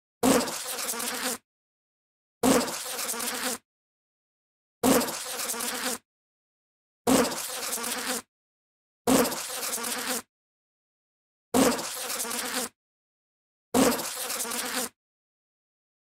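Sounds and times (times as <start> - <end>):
bee buzzing: 0.2 - 1.4, 2.4 - 3.6, 4.8 - 6.0, 7.1 - 8.3, 9.1 - 10.3, 11.6 - 12.8, 13.8 - 15.0.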